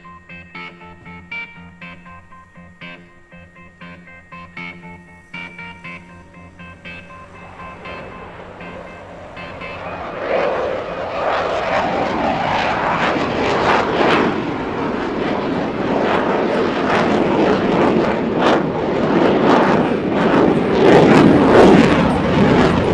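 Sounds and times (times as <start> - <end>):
fighter jet engines roaring: 0.0 - 22.9.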